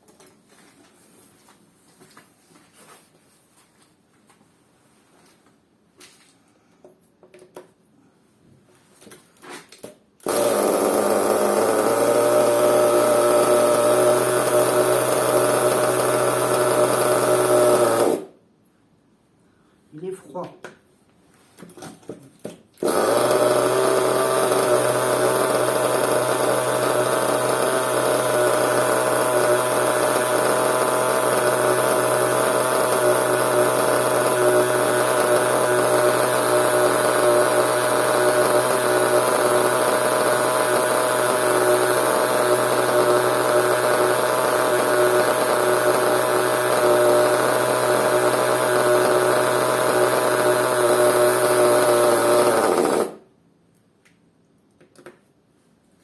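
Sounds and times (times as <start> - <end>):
small nitro engine running: 10.3 - 18.3, 22.8 - 53.2.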